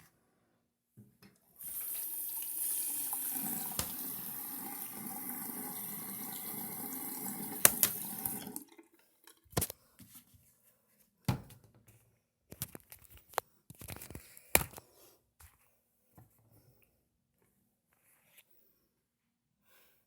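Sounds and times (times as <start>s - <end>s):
running tap water: 1.6s - 8.9s.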